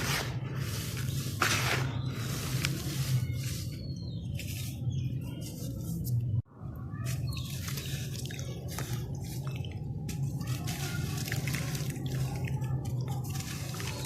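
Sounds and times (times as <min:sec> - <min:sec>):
wet sand crumbling and squelching: 0:07.1 - 0:14.0.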